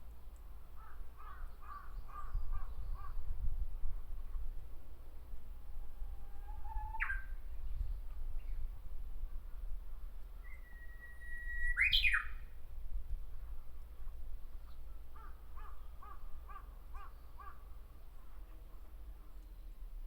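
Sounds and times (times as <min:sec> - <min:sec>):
bird singing whistle and flourish: 0:06.4 - 0:07.4, 0:10.4 - 0:12.5.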